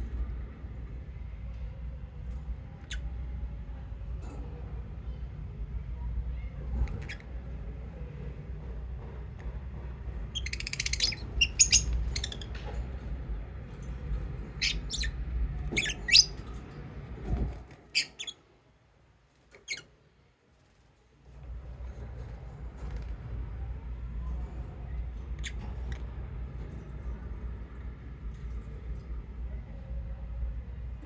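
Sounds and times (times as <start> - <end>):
low background rumble: 0.0 - 31.0
lovebirds chirping and squawking: 10.4 - 12.7, 14.5 - 16.6, 17.9 - 18.4.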